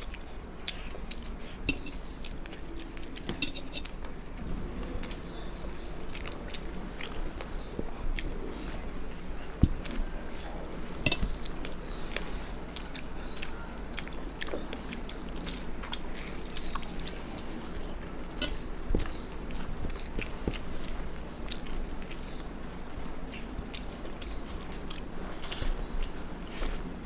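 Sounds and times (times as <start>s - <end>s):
person chewing food: 0.0s - 22.6s, 23.2s - 27.0s
clicks and taps against a plate: 1.7s - 2.0s, 11.0s - 11.3s.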